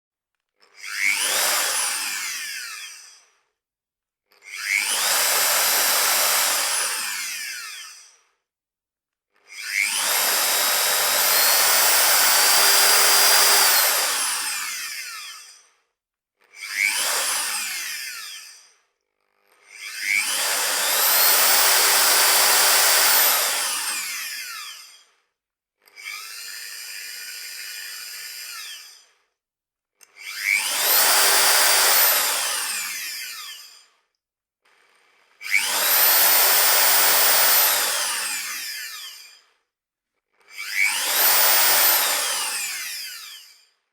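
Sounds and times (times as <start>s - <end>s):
electric drill whining: 0.8s - 3.2s, 4.5s - 8.2s, 9.5s - 15.6s, 16.6s - 18.7s, 19.7s - 25.1s, 25.9s - 29.2s, 30.1s - 33.9s, 34.7s - 39.6s, 40.4s - 43.7s.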